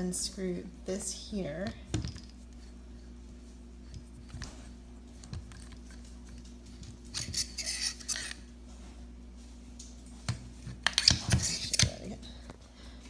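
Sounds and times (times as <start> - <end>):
low steady hum: 0.0 - 13.0
scraping and rubbing: 3.8 - 8.4, 10.8 - 12.1.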